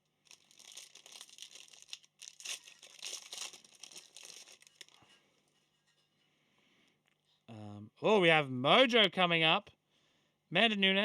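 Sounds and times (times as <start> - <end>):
foil wrapper crinkling and tearing: 0.0 - 5.0.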